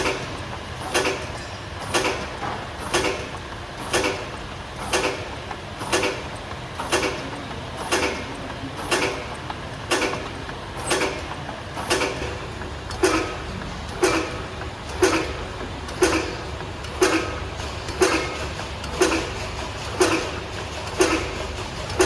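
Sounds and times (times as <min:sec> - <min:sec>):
labelling machine clicking: 0:00.0 - 0:22.0.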